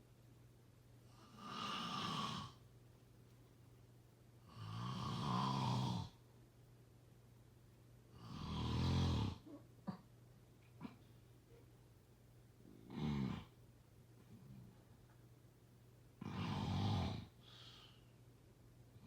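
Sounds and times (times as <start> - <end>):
faint low hum: 0.0 - 19.0
slow snoring with rattle: 1.2 - 2.6, 4.5 - 6.2, 8.2 - 9.4, 12.7 - 13.5, 16.2 - 17.4.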